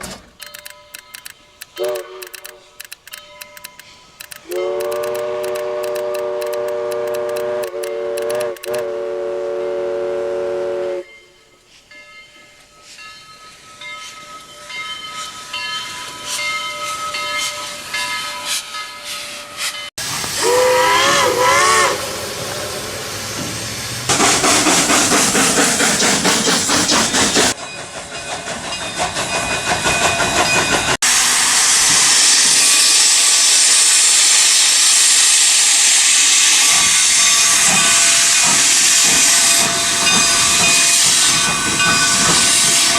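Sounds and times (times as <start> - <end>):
chime whistle: 0.4 - 8.7
steam hissing: 1.1 - 9.6, 18.5 - 42.9
steam whistle wavering: 1.7 - 2.8, 4.3 - 11.6, 19.6 - 23.5, 31.0 - 42.9.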